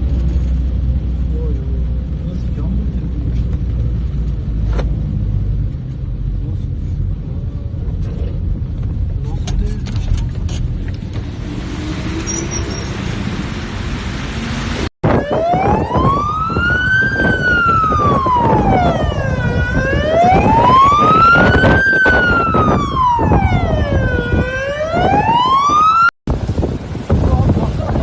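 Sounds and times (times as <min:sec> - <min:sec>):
wind rushing: 0:10.3 - 0:28.0
emergency vehicle siren wailing: 0:15.0 - 0:26.1.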